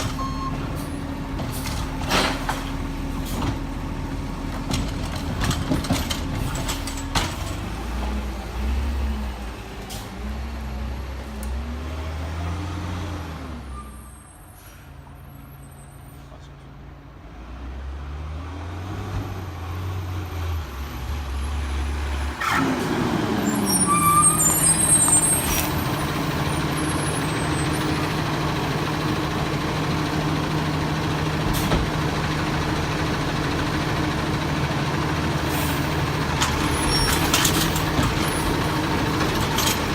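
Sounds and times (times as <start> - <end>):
garbage truck diesel engine: 0.0 - 39.9
brief high squeal: 13.7 - 14.9, 23.5 - 25.7.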